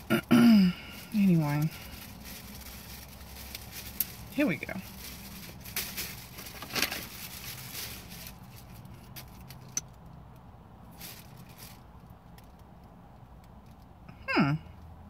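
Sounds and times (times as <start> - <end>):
low hum inside a car: 0.0 - 15.0
soft rustling: 0.8 - 10.1, 10.9 - 12.9
small clicks of objects handled: 8.8 - 10.5, 12.0 - 13.9.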